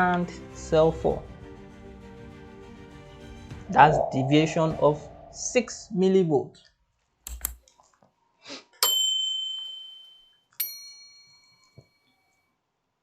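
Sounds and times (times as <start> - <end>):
sharp clicks: 7.3 - 7.6.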